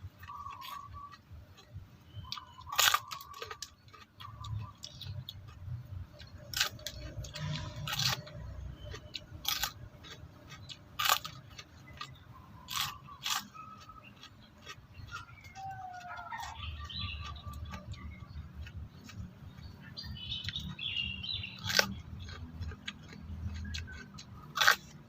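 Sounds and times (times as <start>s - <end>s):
wet chewing: 0.0s - 25.0s
crisp crunching bites: 0.2s - 19.2s, 21.3s - 25.0s.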